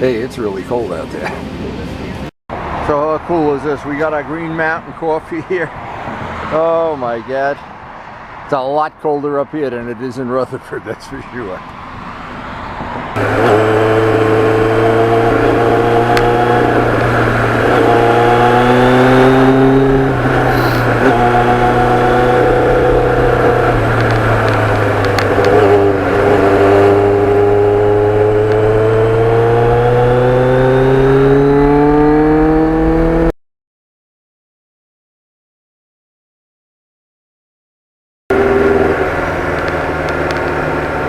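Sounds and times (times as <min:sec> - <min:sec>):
wind rush: 0:12.7 - 0:27.4
motorcycle engine accelerating: 0:13.2 - 0:33.3, 0:38.3 - 0:41.0.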